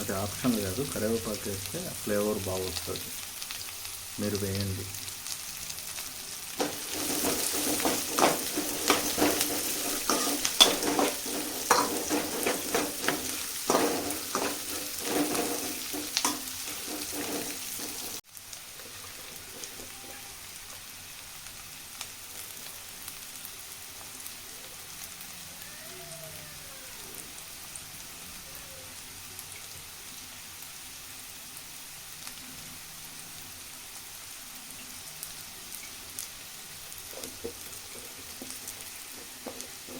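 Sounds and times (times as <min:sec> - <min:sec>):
leaves crackling in hot oil: 0:00.0 - 0:39.9
oil sizzling: 0:00.0 - 0:39.9.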